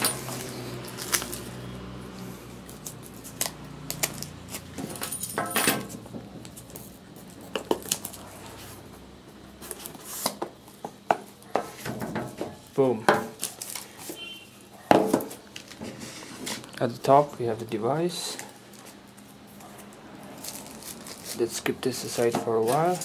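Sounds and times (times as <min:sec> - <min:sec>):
cardboard scraping rustle: 0:19.6 - 0:23.0.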